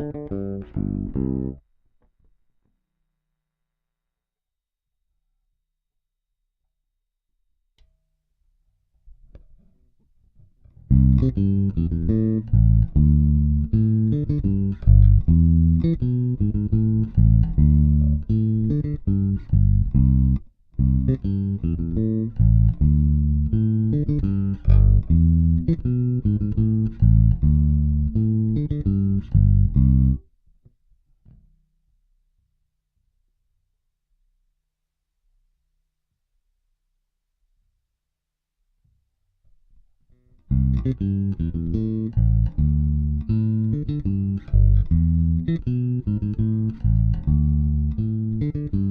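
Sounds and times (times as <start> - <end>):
plucked electric bass notes: 0.0 - 1.6, 10.8 - 30.2, 40.5 - 48.9.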